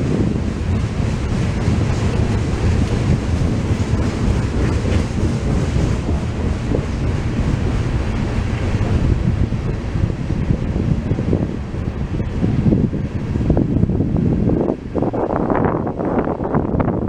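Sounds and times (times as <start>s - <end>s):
freight train rolling past: 0.0s - 17.0s
wind buffeting microphone: 0.0s - 17.0s.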